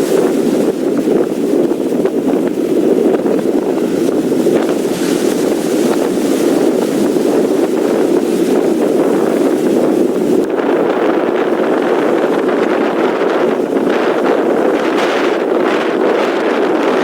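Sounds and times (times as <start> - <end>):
strong wind buffeting microphone: 0.0 - 17.0.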